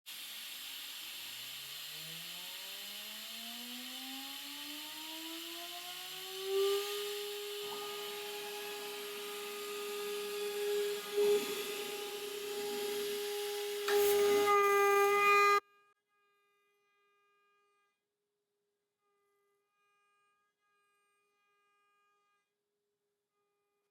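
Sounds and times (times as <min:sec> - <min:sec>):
end mill cutting aluminium: 0:00.1 - 0:15.6
router spindle whine: 0:00.6 - 0:15.6.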